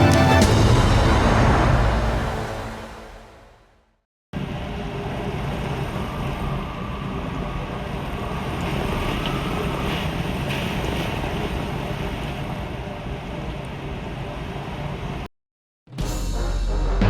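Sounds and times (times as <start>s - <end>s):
background music: 0.0s - 3.6s, 15.9s - 17.0s.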